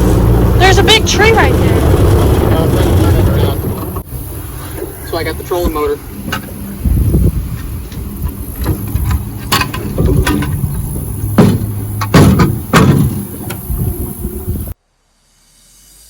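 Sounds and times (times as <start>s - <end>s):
wind buffeting microphone: 0.0s - 14.8s
knocks against boat: 11.3s - 13.7s.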